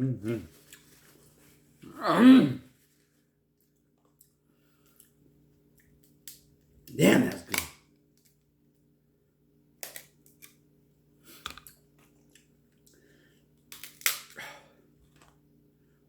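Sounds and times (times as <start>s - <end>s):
crab shells cracking: 7.3s - 7.8s, 9.8s - 10.6s, 13.7s - 14.5s.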